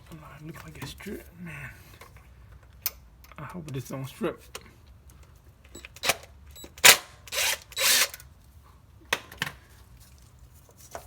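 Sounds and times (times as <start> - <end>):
power driver bursts: 6.8 - 8.2.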